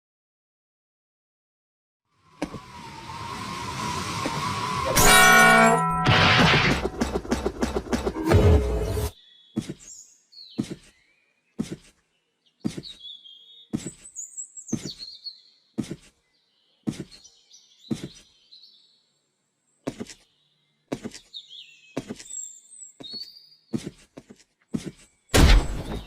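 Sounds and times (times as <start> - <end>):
high chirping whistling glides: 2.5 - 6.0
sharp hits: 4.8 - 9.1.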